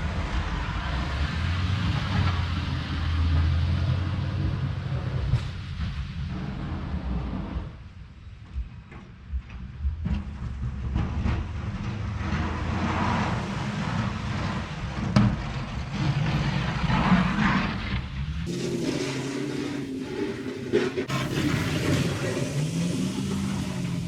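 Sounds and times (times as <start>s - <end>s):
vehicle engine running: 9.3s - 24.0s
scraping noise: 10.0s - 24.0s.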